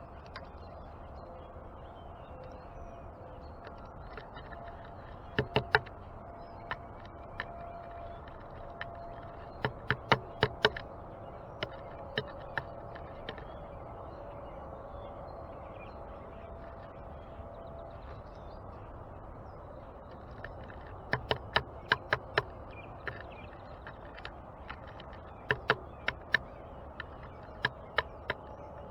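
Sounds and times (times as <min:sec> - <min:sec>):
distant birds chirping: 0:00.0 - 0:28.9
birds pecking at feeder: 0:03.4 - 0:14.7, 0:19.6 - 0:28.9.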